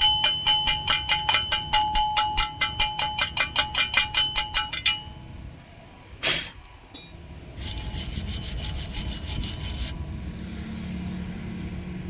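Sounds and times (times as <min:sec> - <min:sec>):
hand tool scraping metal: 0:07.6 - 0:10.0.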